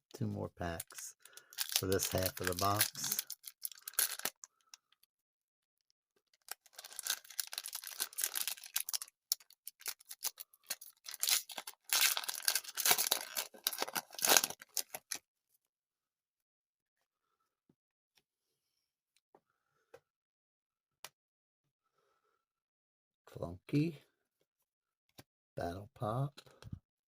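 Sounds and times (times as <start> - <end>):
wrapper tearing and crinkling: 0.8 - 4.5, 6.4 - 15.2.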